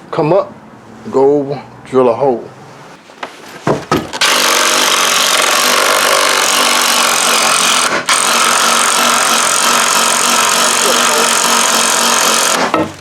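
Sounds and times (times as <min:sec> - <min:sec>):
electric drill boring through wood: 0:04.2 - 0:12.8.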